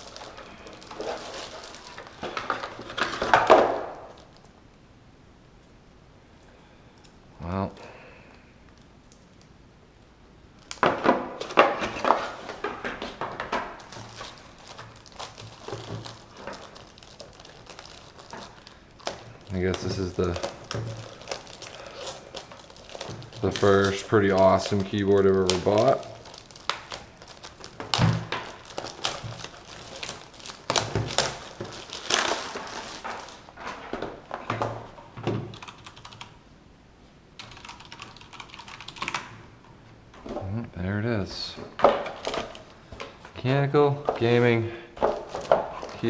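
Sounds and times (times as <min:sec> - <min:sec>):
packaging knocks and rustles: 0:00.0 - 0:04.4, 0:10.6 - 0:35.5, 0:41.6 - 0:43.3, 0:45.0 - 0:46.0.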